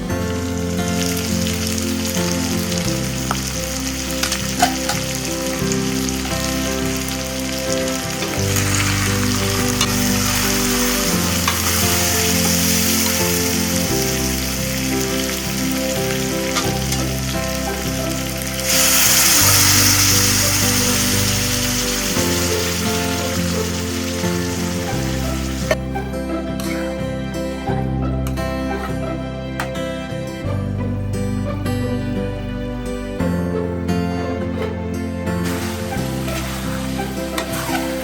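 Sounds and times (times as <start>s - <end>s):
soft background music: 0.0s - 38.0s
pork sizzling in a pan: 0.3s - 25.8s, 35.4s - 38.0s.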